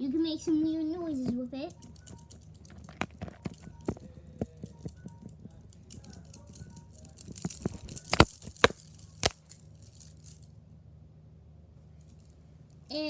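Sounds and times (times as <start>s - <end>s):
fidget bracelet clicking: 1.7s - 10.4s.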